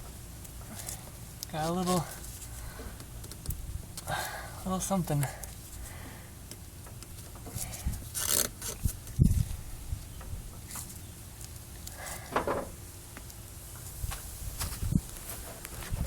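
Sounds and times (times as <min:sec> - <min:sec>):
hands rubbing and scraping hose: 0:00.4 - 0:05.9, 0:06.9 - 0:09.6.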